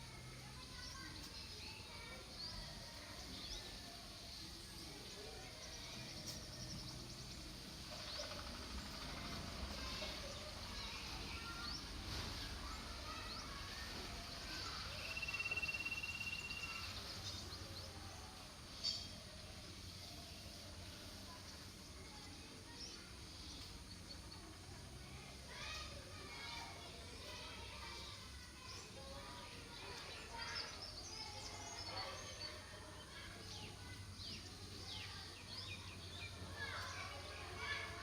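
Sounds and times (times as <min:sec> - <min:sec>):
high bird chirps: 0:15.0 - 0:17.0.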